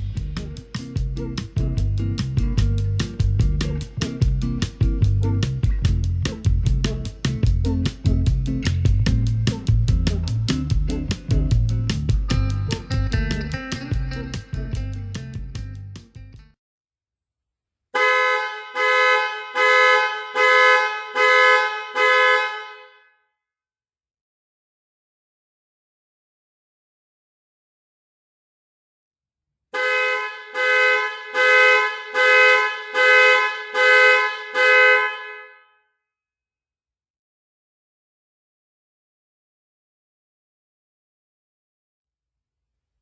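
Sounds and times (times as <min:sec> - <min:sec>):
strummed guitar with bass and beat: 0:00.0 - 0:16.6
two-tone car horn blasts: 0:18.0 - 0:23.1, 0:29.8 - 0:35.8.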